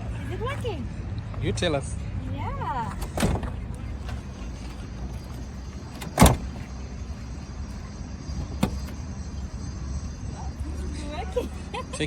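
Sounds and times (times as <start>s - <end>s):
car door latch clunk: 3.0s - 4.8s, 5.9s - 6.7s, 8.4s - 9.0s.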